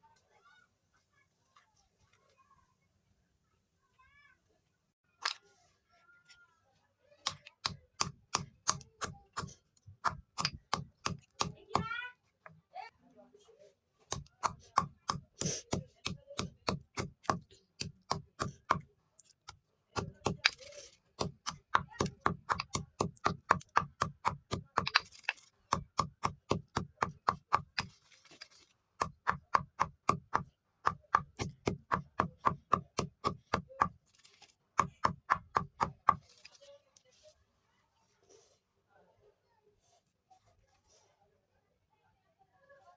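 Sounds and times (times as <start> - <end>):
chalky sticks crunching: 14.1 - 36.7.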